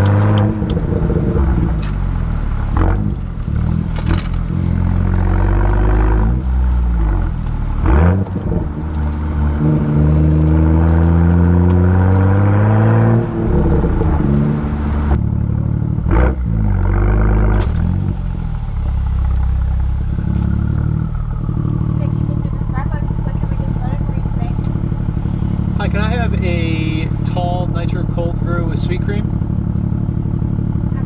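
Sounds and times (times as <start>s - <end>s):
car exhaust under throttle: 0.0s - 31.0s
exhaust cracks: 0.0s - 31.0s.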